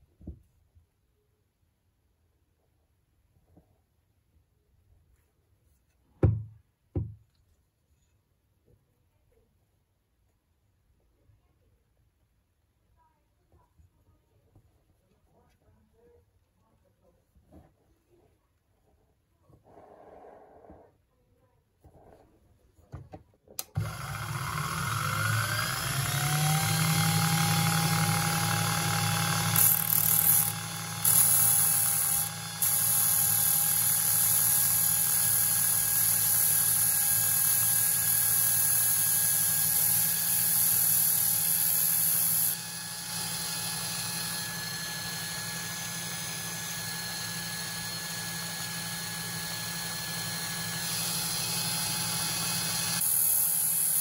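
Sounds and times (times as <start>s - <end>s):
small electric motor whining: 23.7s - 54.0s.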